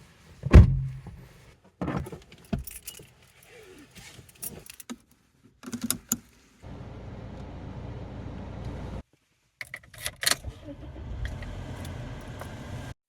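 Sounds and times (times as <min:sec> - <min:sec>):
car engine running: 0:06.7 - 0:09.0.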